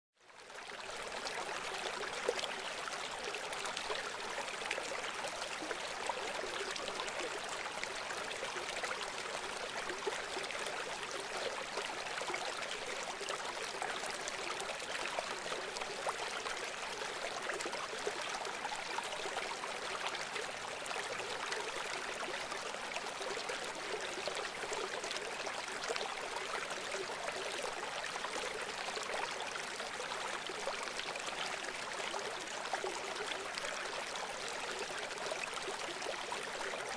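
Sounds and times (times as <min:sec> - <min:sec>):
stream babbling over stones: 0:00.6 - 0:36.9.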